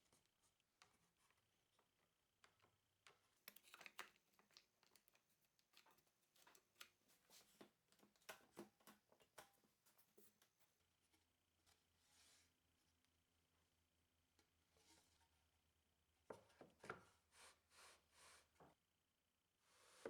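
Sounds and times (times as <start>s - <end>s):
faint light clicks and taps: 1.7s - 10.7s.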